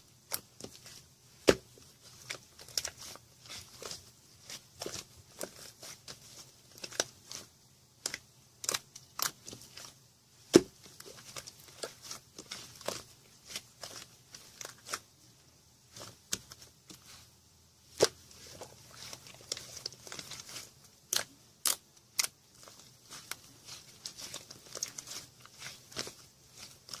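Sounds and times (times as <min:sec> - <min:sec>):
slime squishing with sticky clicks: 0:17.9 - 0:27.0.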